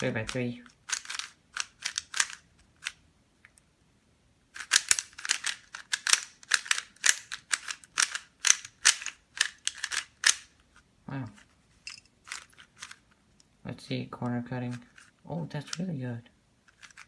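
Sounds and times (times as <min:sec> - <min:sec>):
puzzle cube layers clacking: 0:00.0 - 0:03.0, 0:04.5 - 0:10.6, 0:11.3 - 0:13.5, 0:14.6 - 0:15.9, 0:16.6 - 0:17.0.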